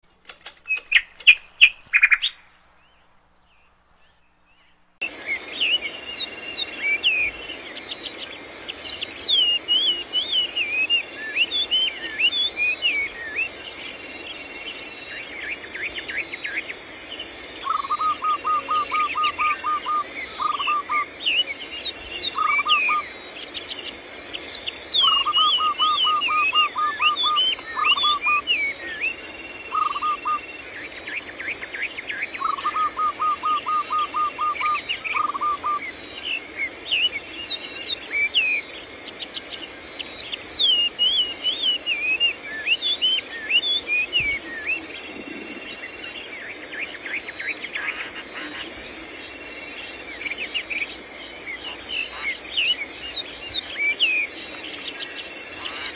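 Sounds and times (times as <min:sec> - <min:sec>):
birds chirping: 0:00.0 - 0:55.9
insect buzz: 0:00.1 - 0:55.9.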